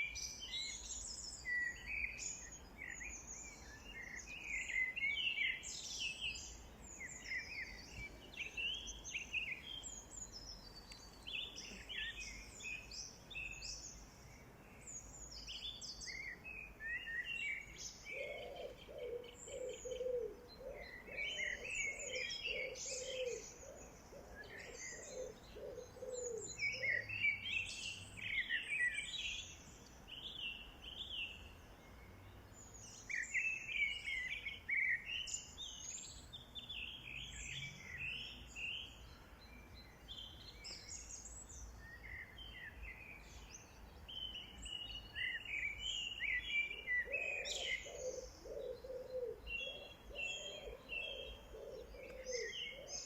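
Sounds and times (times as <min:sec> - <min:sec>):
songbirds chirping and singing: 0:00.0 - 0:53.0
lower repeating bird call: 0:46.4 - 0:53.0.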